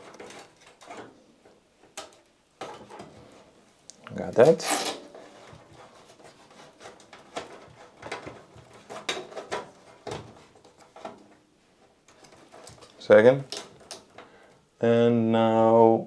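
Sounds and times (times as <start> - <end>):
cables rubbing and scraping: 4.1 - 11.3, 12.1 - 14.1.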